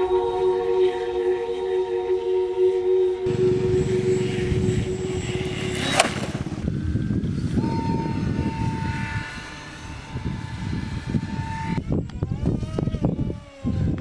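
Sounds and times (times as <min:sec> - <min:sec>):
higher-pitched whine: 0:00.0 - 0:12.3
electric motor whining: 0:03.2 - 0:14.0
wind rumble on microphone: 0:03.3 - 0:14.0.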